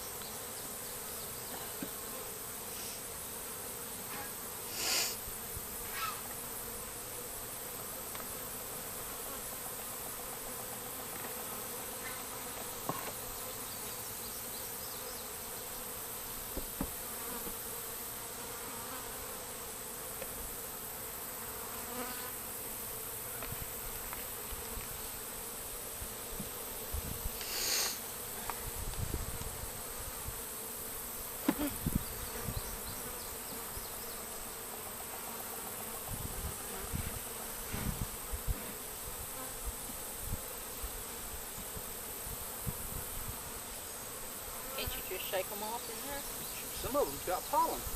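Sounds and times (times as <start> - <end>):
bees buzzing: 0.0 - 47.9.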